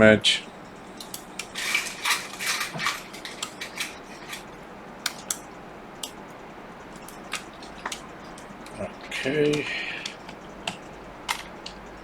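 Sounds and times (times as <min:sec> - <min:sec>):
small metal tools clicking: 0:01.0 - 0:05.4.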